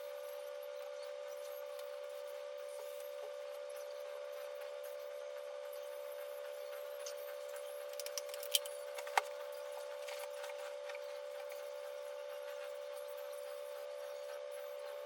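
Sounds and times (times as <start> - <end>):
steady hum: 0.0 - 15.0.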